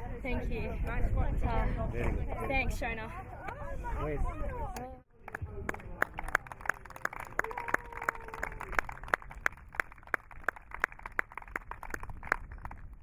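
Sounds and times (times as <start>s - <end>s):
small crowd applauding: 5.2s - 13.0s.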